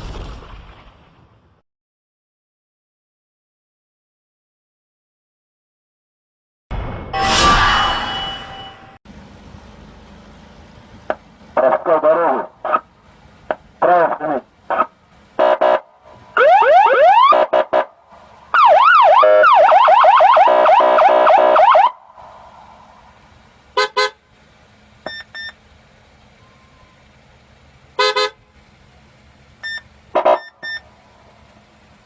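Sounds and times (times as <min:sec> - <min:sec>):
electronic police siren wailing: 0:16.4 - 0:17.7, 0:18.6 - 0:22.0.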